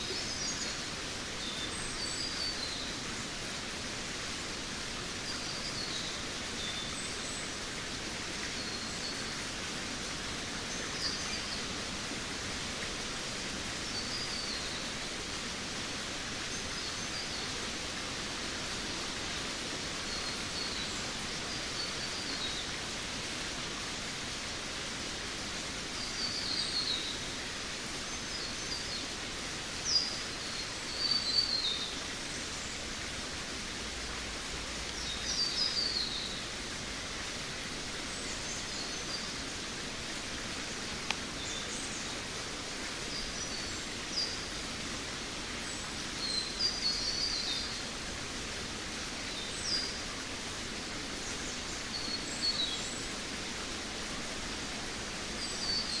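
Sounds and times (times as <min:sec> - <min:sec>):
steady hiss: 0:00.0 - 0:56.0.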